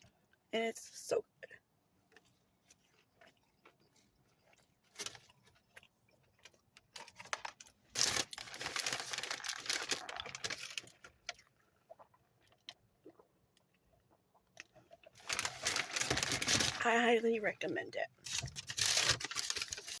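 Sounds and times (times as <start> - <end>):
food packaging crinkling: 2.2 - 11.6, 15.0 - 16.9, 18.2 - 20.0.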